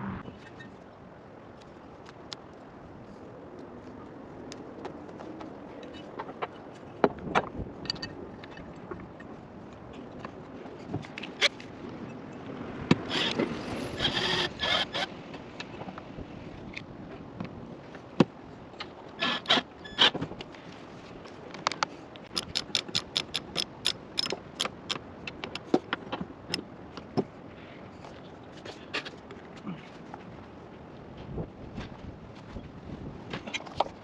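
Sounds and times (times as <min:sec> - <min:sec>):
metal parts scraping and knocking: 0:21.6 - 0:25.0
sharp metallic clicks: 0:21.6 - 0:25.7.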